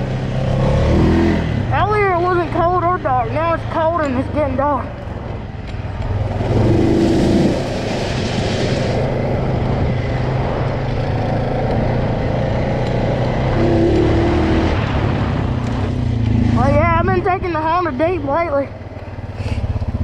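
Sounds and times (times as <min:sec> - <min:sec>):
atv engine running: 0:00.0 - 0:20.0
hiss: 0:06.9 - 0:09.2.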